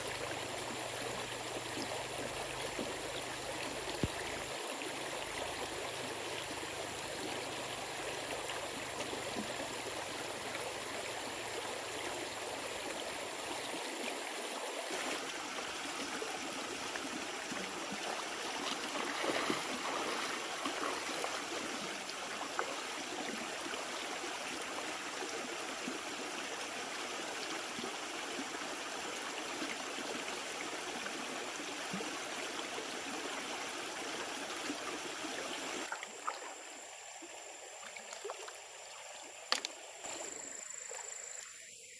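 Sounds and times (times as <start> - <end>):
stream water running: 0.0 - 41.9.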